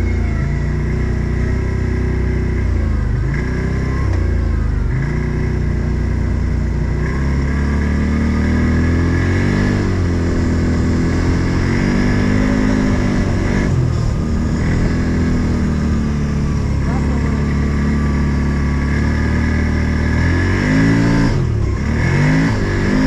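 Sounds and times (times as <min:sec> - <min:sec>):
off-road vehicle engine revving: 0:00.0 - 0:23.0.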